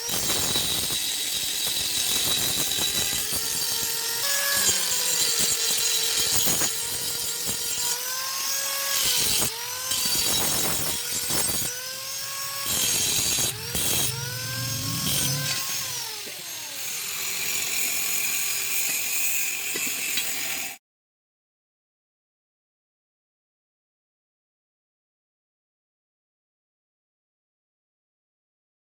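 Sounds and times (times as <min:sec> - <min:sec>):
angle grinder grinding metal: 0:03.5 - 0:17.1.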